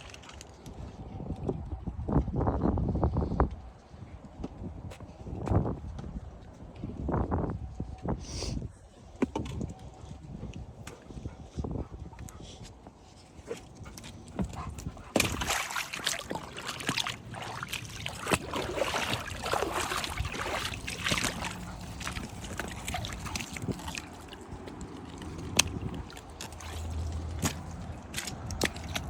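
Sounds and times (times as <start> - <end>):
dog making sounds: 13.4 - 17.1, 18.9 - 24.4
water splashing: 13.5 - 29.0.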